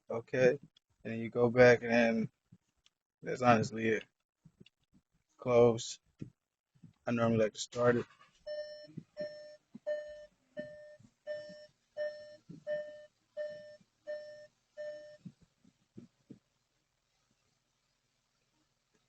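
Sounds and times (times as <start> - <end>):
dashboard warning chime: 8.5 - 15.2.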